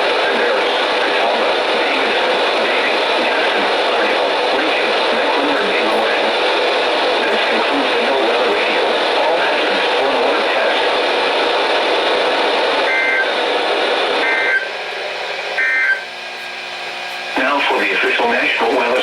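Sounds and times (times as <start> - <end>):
radio static: 0.0 - 19.0
two-tone data bursts: 12.8 - 13.3, 14.2 - 14.7.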